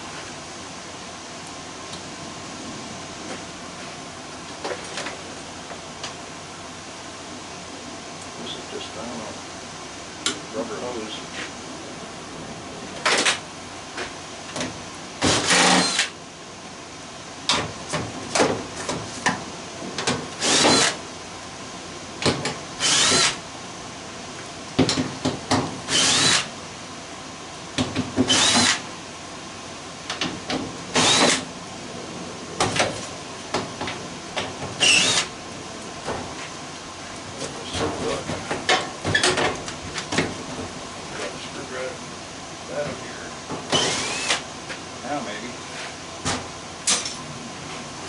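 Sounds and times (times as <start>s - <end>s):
power drill whining: 15.2s - 16.1s, 20.4s - 21.0s, 22.8s - 23.4s, 25.9s - 26.5s, 28.2s - 28.8s, 30.9s - 31.4s, 34.8s - 35.3s, 43.7s - 44.4s.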